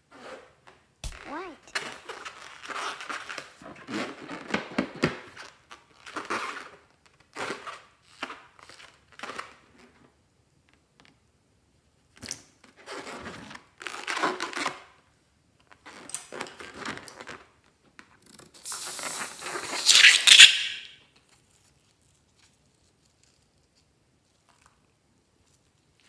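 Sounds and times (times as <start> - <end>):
scissors cutting rubber balloon: 1.0 - 1.5, 18.5 - 20.9.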